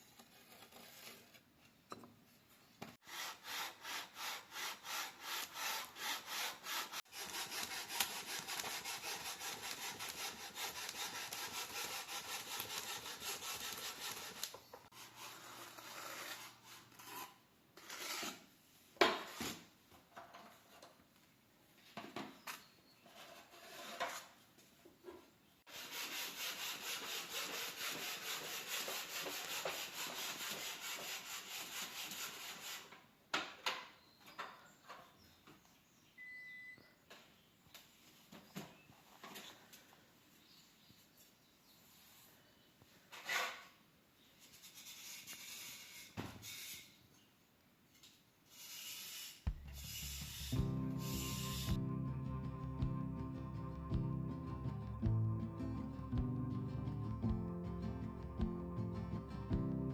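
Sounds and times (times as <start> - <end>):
hand tool rasping: 3.0 - 18.4
scrapes and knocks: 21.9 - 24.4.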